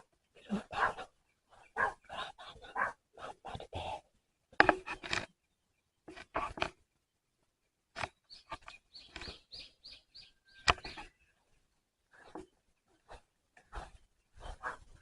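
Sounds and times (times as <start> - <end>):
clicks and rustles: 4.5 - 5.4, 6.1 - 6.8, 7.9 - 9.5
small bird chirping: 8.0 - 15.0.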